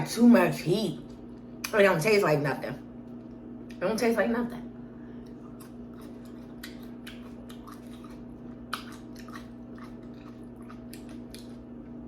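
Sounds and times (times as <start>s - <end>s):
person chewing noodles: 5.2s - 12.0s.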